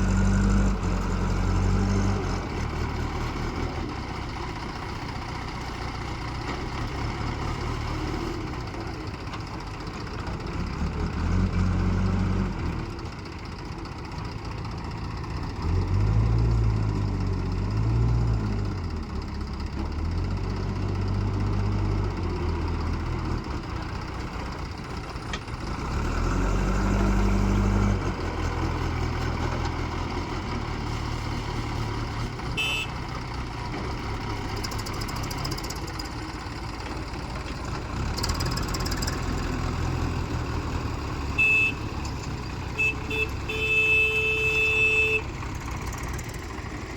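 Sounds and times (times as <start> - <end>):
heavy diesel engine running: 0.0 - 46.9
short beeps: 41.4 - 41.9.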